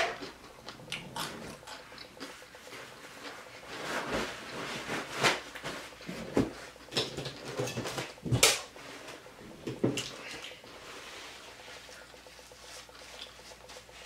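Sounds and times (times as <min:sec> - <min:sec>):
crunchy food chewing: 0:00.1 - 0:03.6.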